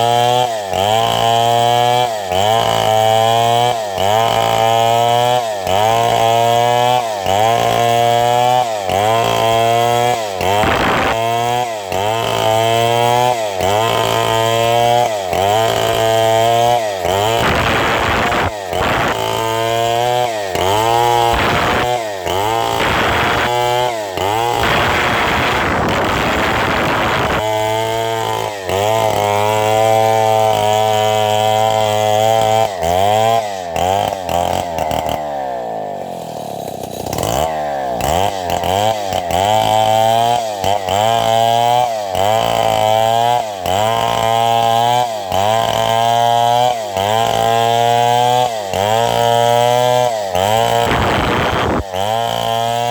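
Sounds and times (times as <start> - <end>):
chainsaw cutting wood: 0.0 - 52.9.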